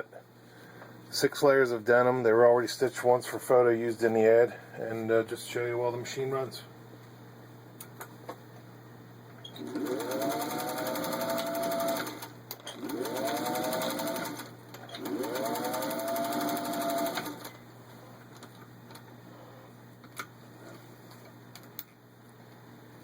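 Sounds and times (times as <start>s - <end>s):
sewing machine motor whine: 9.5s - 17.6s.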